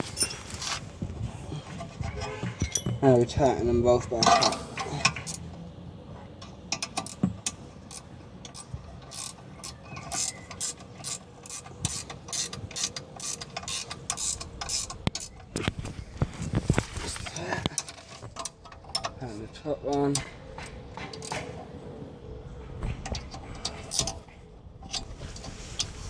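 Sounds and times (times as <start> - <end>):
ratchet wrench clicking: 7.9 - 15.3.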